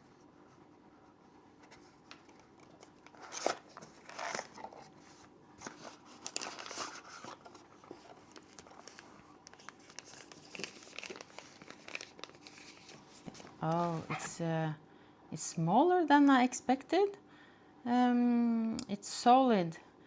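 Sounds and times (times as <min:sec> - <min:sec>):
packaging rustling and crinkling: 0:01.6 - 0:14.3.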